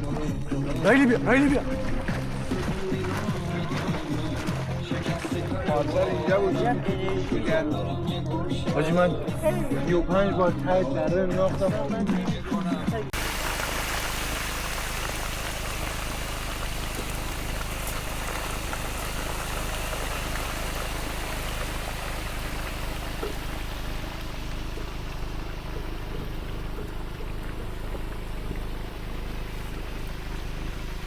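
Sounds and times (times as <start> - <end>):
low even hum: 13.2 - 31.0.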